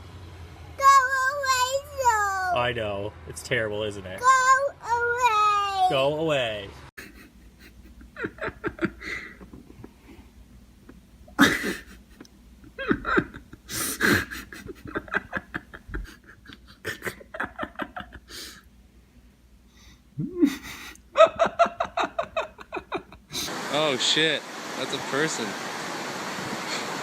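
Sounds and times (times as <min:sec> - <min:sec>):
person laughing: 0:07.0 - 0:10.2, 0:10.9 - 0:18.6, 0:20.2 - 0:23.5
breathing: 0:18.3 - 0:18.7, 0:19.6 - 0:20.1.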